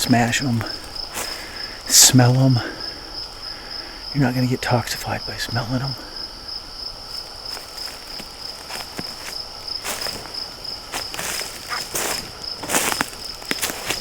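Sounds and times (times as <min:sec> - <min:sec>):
footsteps in leaf litter: 0:00.0 - 0:01.6, 0:07.1 - 0:14.0
insect trilling: 0:00.0 - 0:14.0.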